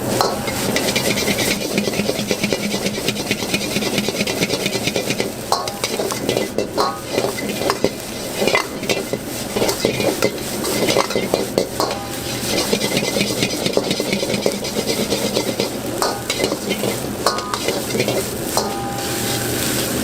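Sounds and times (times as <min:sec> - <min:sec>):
spatula clanging on wok: 0:00.0 - 0:19.6
frying sizzle: 0:00.0 - 0:20.0
spatula scraping in a wok: 0:00.0 - 0:20.0.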